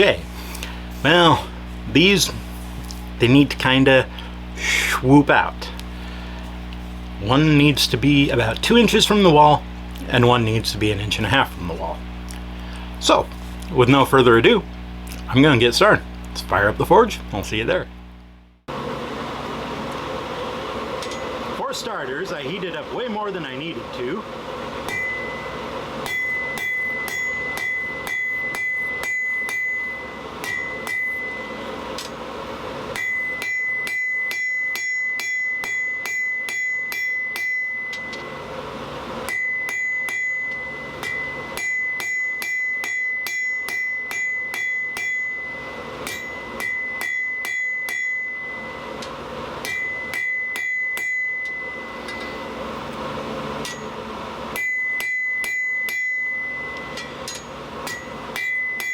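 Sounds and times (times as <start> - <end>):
hammer striking steel on anvil: 20.9 - 21.6, 24.8 - 58.9.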